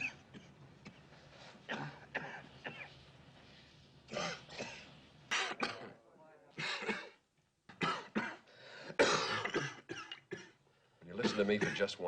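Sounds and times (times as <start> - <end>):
man coughing: 6.6 - 10.6, 11.2 - 11.9.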